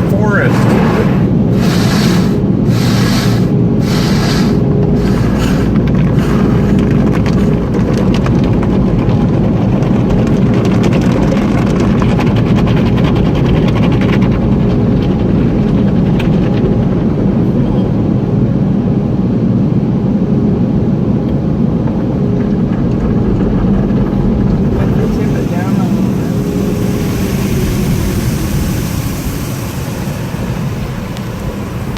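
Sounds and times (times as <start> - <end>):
rushing hiss: 0.0 - 7.8, 24.5 - 31.9
car wash machinery rumbling: 0.0 - 31.9.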